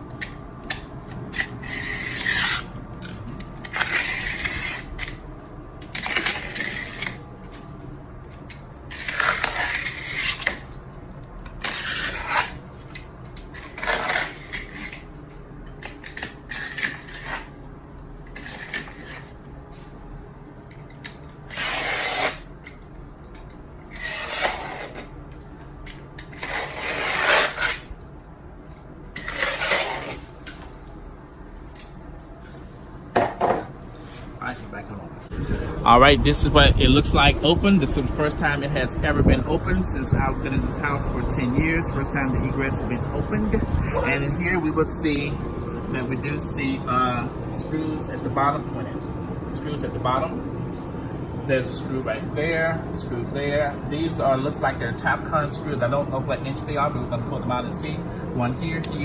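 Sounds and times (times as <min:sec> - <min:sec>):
hand tools scraping: 0:00.7 - 0:05.2, 0:08.9 - 0:10.7, 0:11.6 - 0:12.6, 0:21.5 - 0:22.4, 0:23.9 - 0:25.1, 0:26.3 - 0:27.8, 0:29.2 - 0:30.3.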